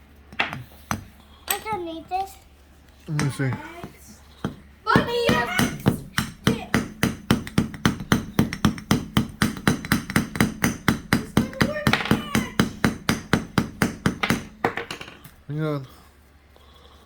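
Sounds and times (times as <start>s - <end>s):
hammer striking toy egg: 0.3s - 1.6s, 3.2s - 15.4s.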